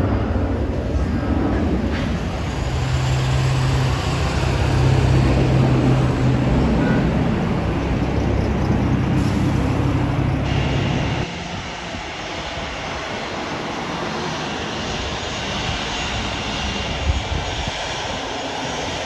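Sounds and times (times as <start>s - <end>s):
aircraft engines droning: 0.0s - 19.0s.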